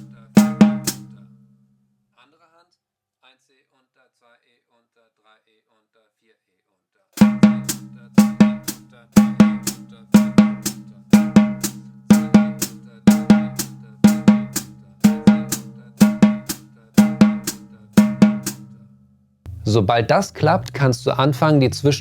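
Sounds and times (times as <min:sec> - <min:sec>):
snare drum double strokes: 0:07.2 - 0:18.7.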